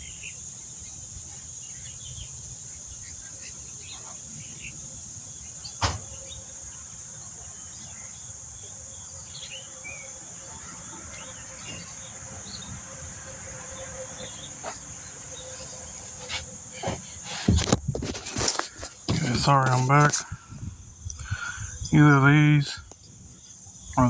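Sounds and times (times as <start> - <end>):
faint chirps: 0.0 - 24.0
high-pitched insect chorus: 0.0 - 24.0
sharp knock: 5.8 - 6.0.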